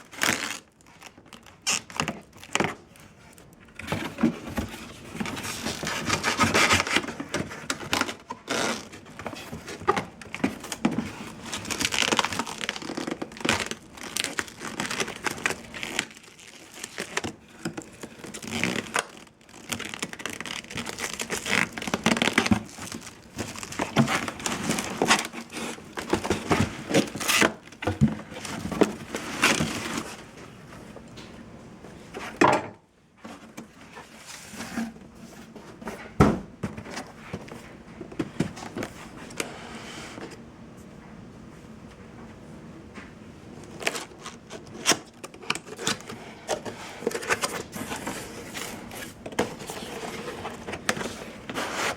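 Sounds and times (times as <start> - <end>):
packaging crinkling and rustling: 0.0 - 31.4, 43.5 - 51.9.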